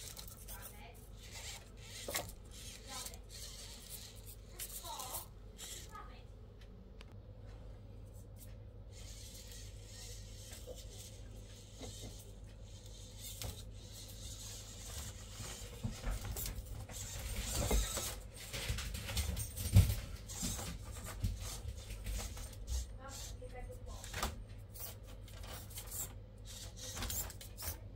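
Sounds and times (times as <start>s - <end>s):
rc crawler clicks and creaks: 0.0s - 6.0s, 8.9s - 18.2s, 24.8s - 27.8s.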